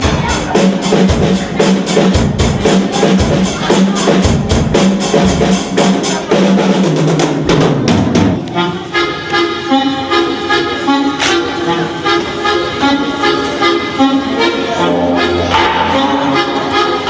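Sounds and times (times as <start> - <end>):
background music drum beat: 0.0 - 8.6
sustained melodic notes: 8.4 - 17.0.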